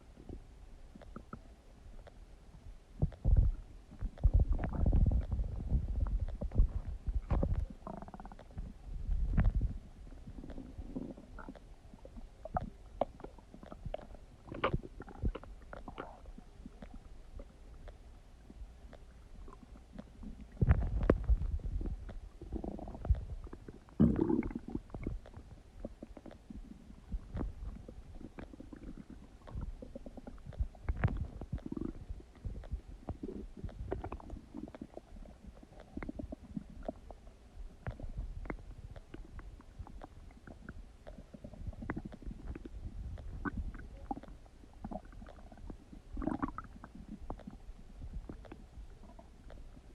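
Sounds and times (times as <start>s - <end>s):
stomach gurgling: 0.0s - 49.9s.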